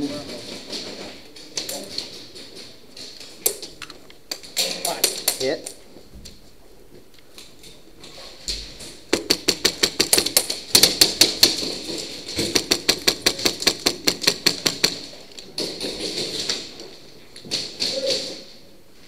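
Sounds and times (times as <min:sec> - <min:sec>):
airsoft guns firing: 0:09.1 - 0:16.6.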